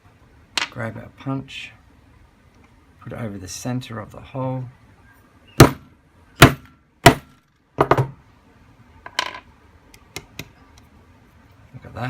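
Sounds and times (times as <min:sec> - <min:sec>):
hammer striking metal punch: 0:05.6 - 0:08.1.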